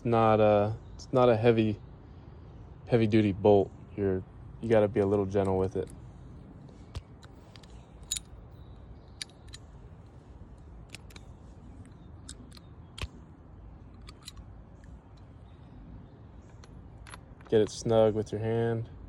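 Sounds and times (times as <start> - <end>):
metallic clicks and taps: 10.9 - 13.2, 13.9 - 15.3.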